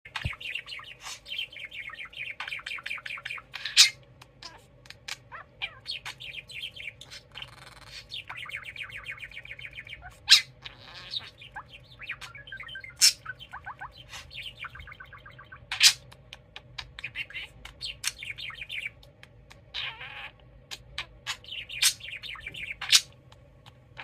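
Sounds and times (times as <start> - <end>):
budgerigar chittering: 0.1 - 24.0
budgerigar squawk: 2.1 - 8.6, 9.9 - 16.0, 19.7 - 23.2.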